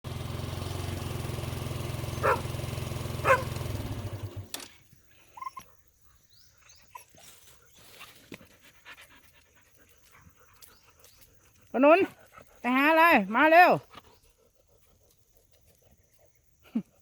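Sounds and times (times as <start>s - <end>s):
engine idling: 0.0s - 4.7s
dog barking: 2.2s - 2.5s, 3.2s - 3.5s.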